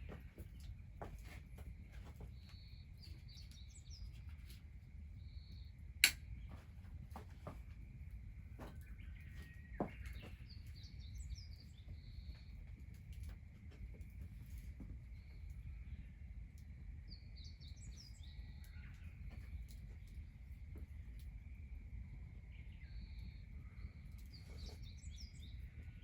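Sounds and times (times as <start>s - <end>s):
birds chirping: 8.5s - 12.8s.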